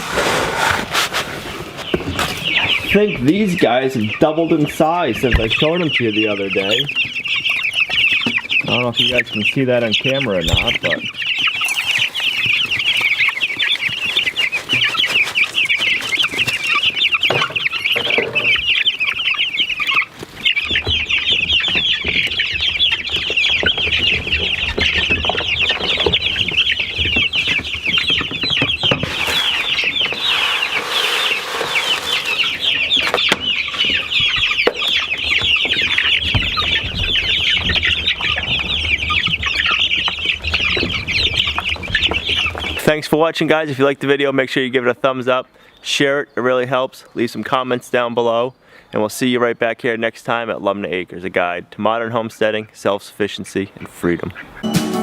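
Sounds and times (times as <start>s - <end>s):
rustling: 0.0s - 2.9s, 10.4s - 18.0s, 23.7s - 35.0s
chicks peeping: 0.0s - 55.0s.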